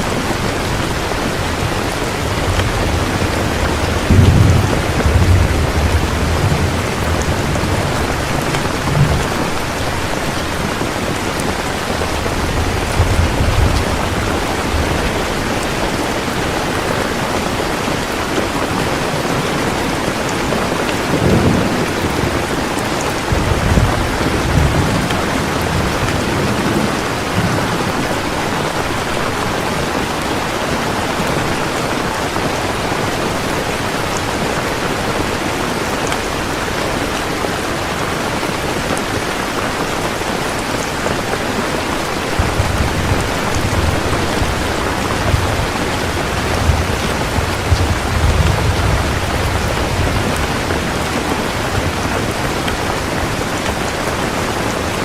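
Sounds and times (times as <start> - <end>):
distant thunder rumbles: 0.0 - 29.9, 42.0 - 55.0
heavy rain: 0.0 - 55.0.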